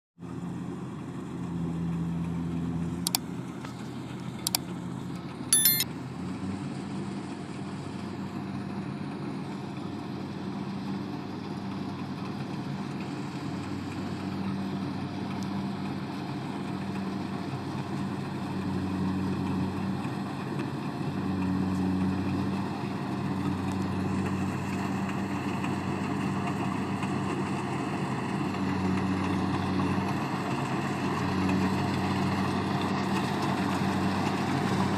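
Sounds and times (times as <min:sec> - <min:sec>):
sharp metallic clicks: 0:05.6 - 0:05.8
farm machine engine running: 0:09.5 - 0:34.9.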